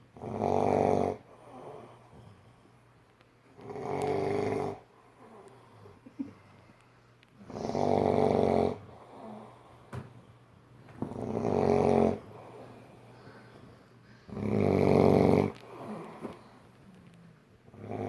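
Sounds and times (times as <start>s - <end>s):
person snoring loudly: 7.5s - 9.4s, 11.2s - 12.3s, 14.3s - 16.2s.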